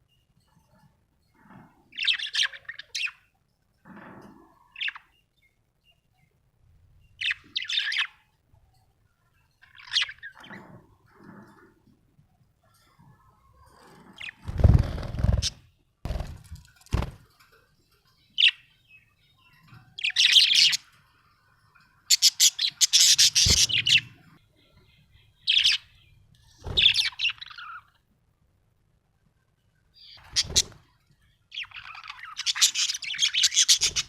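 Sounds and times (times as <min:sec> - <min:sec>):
budgerigar chirping: 0:22.1 - 0:24.2, 0:31.6 - 0:34.0.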